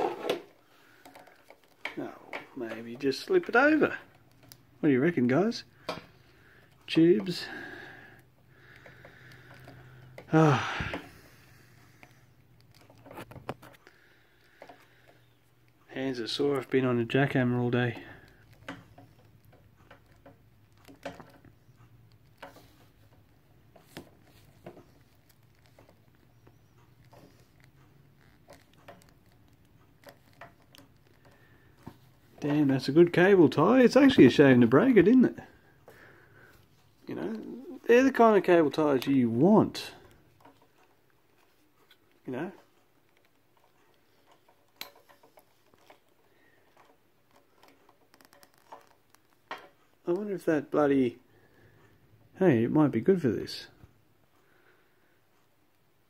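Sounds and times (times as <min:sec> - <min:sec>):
plastic cable tie clicking: 0:18.3 - 0:32.2, 0:43.1 - 0:49.7
hands clicking plastic cable tie: 0:43.1 - 0:49.7.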